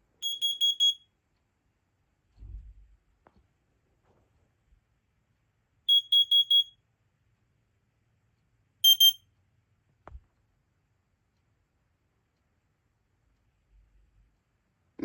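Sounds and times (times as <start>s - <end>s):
high-pitched alarm beeps: 0.2s - 1.0s, 5.9s - 6.7s, 8.8s - 9.2s
harsher smoke alarm beeps: 0.2s - 1.1s, 5.9s - 6.8s, 8.8s - 9.2s.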